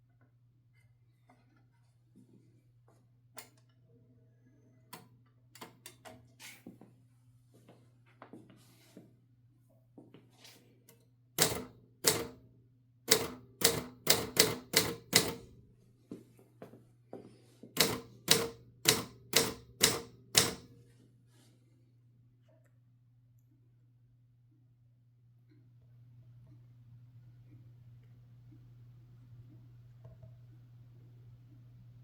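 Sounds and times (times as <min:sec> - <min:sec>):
typewriter typebar strikes: 0:11.4 - 0:12.4, 0:13.1 - 0:15.5, 0:17.8 - 0:20.8.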